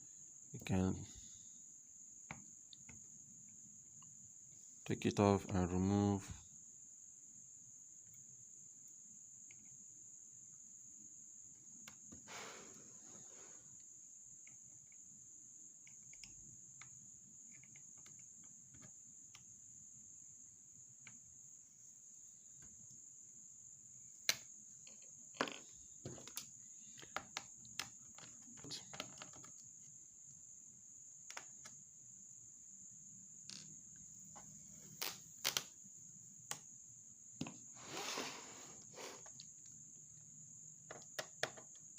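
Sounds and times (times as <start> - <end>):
plastic parts handled: 24.8 - 29.7
screwdriver clicks and taps: 40.9 - 41.8.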